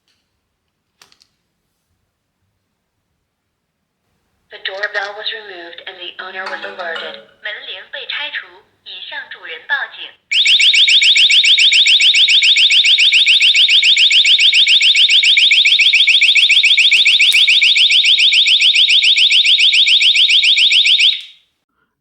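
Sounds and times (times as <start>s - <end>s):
electronic siren chirping: 10.3s - 21.3s.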